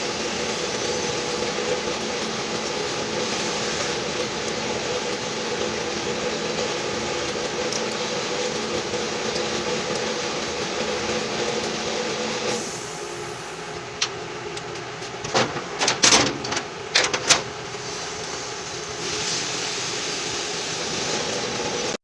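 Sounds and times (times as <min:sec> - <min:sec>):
steady mechanical hum: 0:00.0 - 0:22.0
sharp knocks and clicks: 0:14.0 - 0:17.4.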